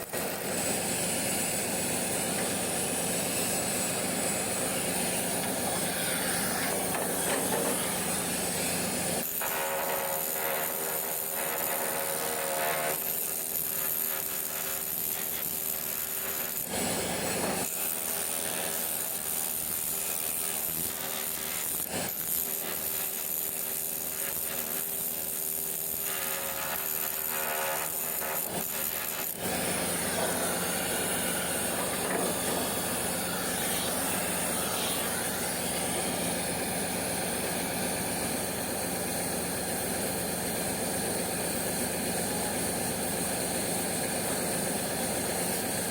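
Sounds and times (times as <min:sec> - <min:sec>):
industrial hiss: 0:29.5 - 0:37.5.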